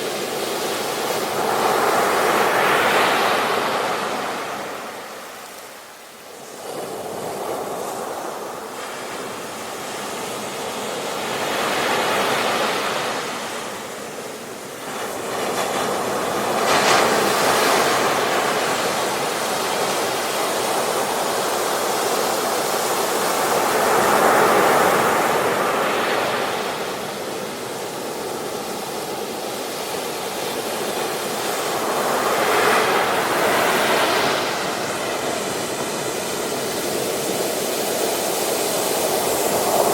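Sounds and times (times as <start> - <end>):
waves breaking on shore: 0.0 - 39.9.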